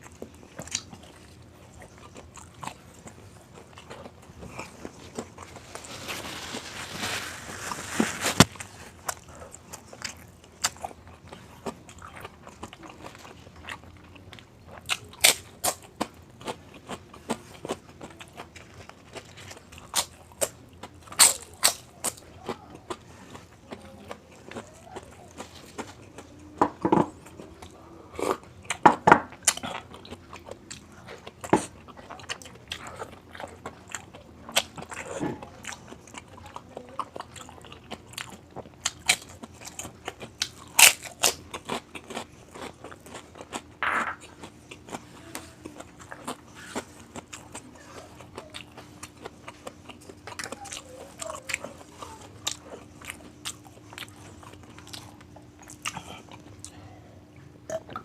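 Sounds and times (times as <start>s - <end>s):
crunchy bites and chewing: 0.0s - 56.8s
faint steady hum: 0.0s - 58.0s.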